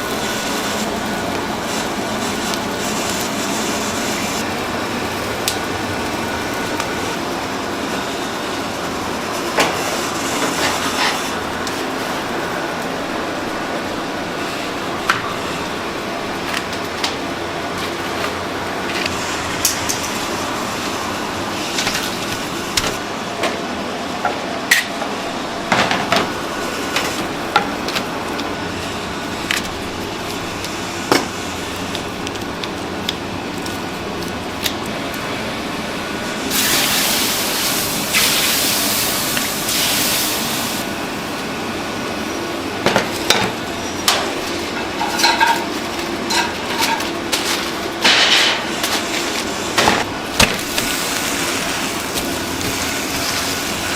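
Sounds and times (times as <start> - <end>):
steady background hum: 0.0 - 53.9
hiss: 36.4 - 40.9
utensils clinking and knocking: 42.9 - 48.7.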